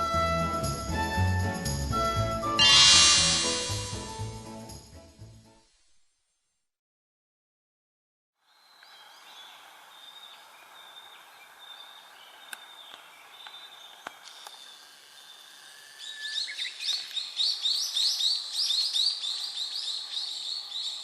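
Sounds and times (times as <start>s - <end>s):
songbirds singing: 8.5s - 21.0s.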